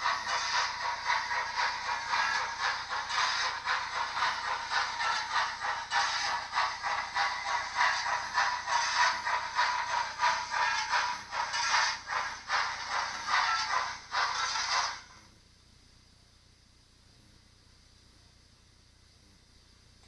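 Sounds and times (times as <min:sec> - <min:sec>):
model train wheels clattering: 0:00.0 - 0:15.2
model steam locomotive chuffing: 0:00.0 - 0:15.4.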